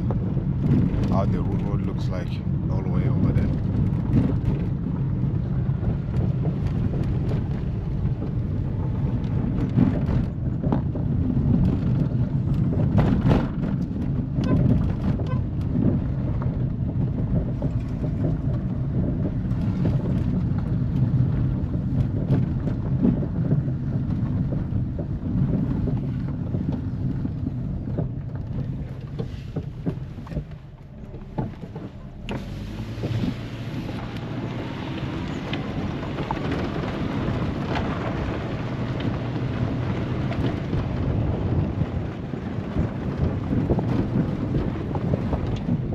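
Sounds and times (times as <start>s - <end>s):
vehicle engine and road rumble: 0.0s - 45.9s
knocks and rattles: 5.7s - 41.0s.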